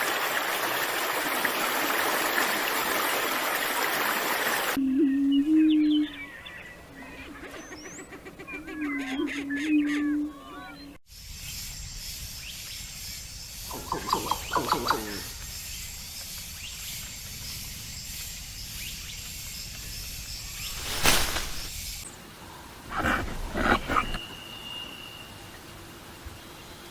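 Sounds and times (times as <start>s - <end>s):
steady high hiss: 11.1s - 26.9s
harsh noisy animal call: 22.6s - 24.4s.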